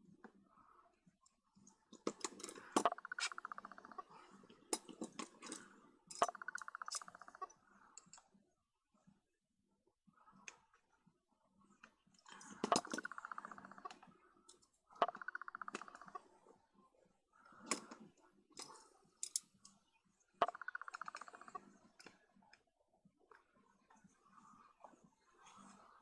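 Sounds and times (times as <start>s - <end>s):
small parts clicking and knocking: 2.0s - 3.8s, 4.7s - 7.4s, 12.4s - 13.9s, 18.6s - 19.5s, 20.4s - 22.1s
fine rasping ticks: 2.0s - 4.1s, 4.8s - 8.2s, 12.3s - 16.2s, 20.4s - 22.1s.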